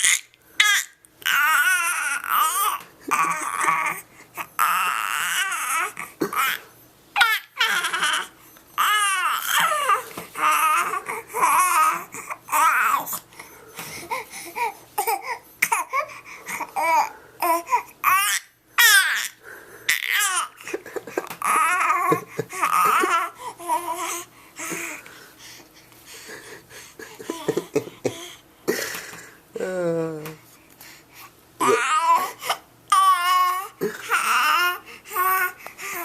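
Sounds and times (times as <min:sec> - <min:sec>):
baby babbling and squealing: 0:07.2 - 0:13.2, 0:31.6 - 0:36.0.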